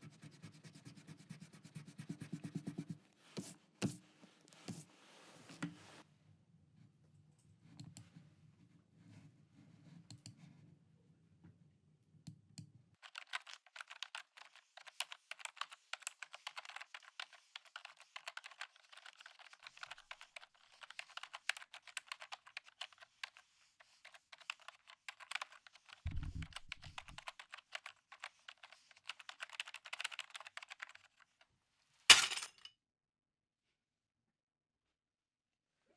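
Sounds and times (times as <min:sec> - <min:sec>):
low thump: 0:26.1 - 0:26.7.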